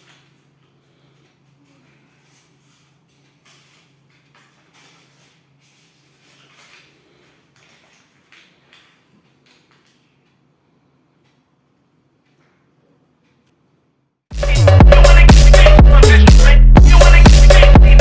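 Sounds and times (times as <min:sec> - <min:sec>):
low hum: 0:14.3 - 0:18.0.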